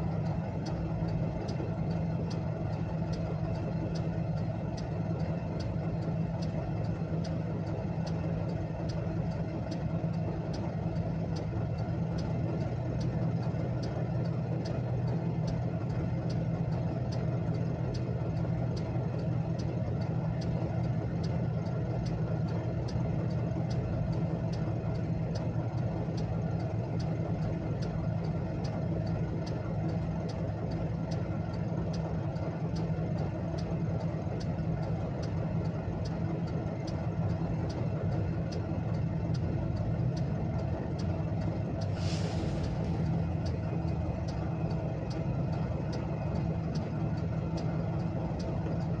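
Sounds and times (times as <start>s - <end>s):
car engine idling: 0.0s - 49.0s
short hiss: 41.9s - 42.9s.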